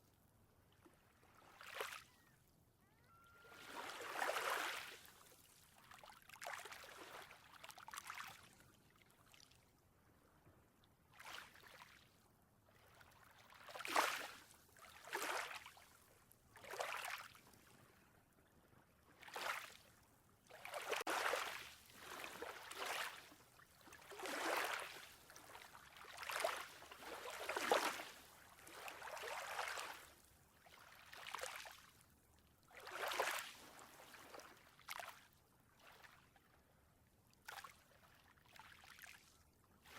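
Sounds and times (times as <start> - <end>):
ocean water lapping and splashing: 0.8 - 2.1, 3.5 - 9.6, 12.8 - 32.1, 32.7 - 36.4.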